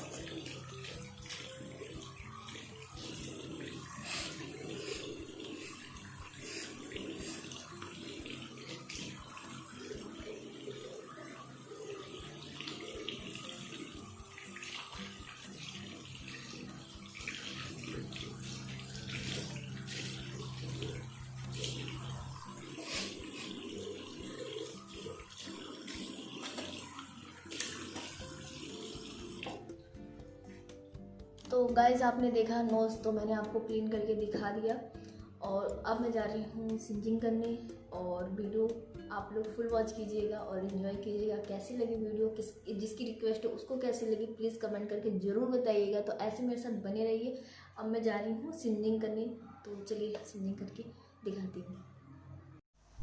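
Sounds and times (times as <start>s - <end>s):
water splashes: 0.0s - 29.7s
tap running into basin: 0.0s - 29.8s
person blowing nose: 22.8s - 23.4s.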